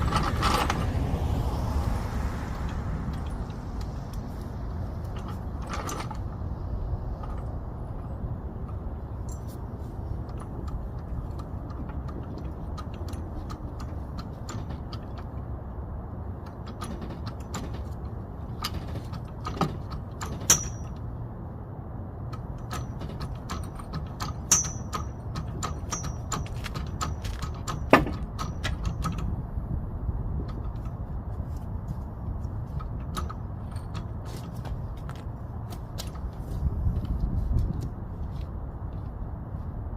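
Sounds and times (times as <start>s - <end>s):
hand tools clinking and clattering: 7.1s - 15.5s, 16.5s - 21.1s, 22.4s - 29.3s
sharp metallic clanks: 16.5s - 21.2s, 22.3s - 29.4s.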